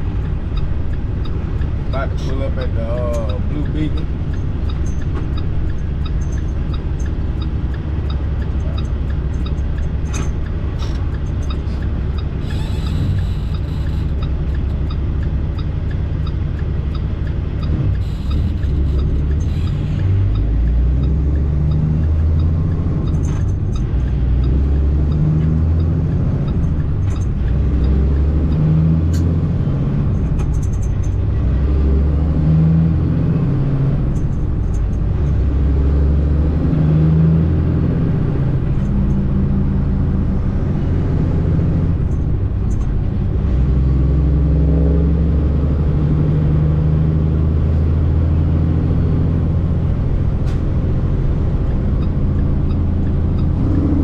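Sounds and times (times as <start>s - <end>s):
truck diesel engine drone: 0.0s - 54.0s.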